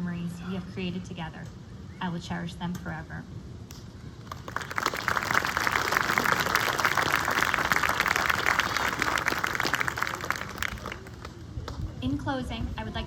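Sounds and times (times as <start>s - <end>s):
audience applauding: 4.3s - 11.4s.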